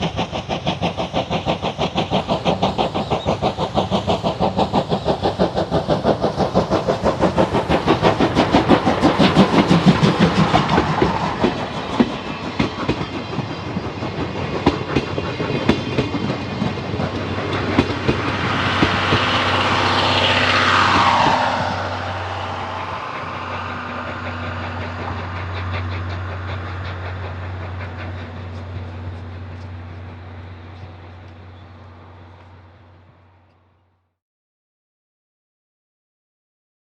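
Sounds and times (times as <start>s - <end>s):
wheels clacking over rail joints: 0.0s - 33.0s
passenger train passing: 0.0s - 34.0s
steady low hum: 16.6s - 33.3s.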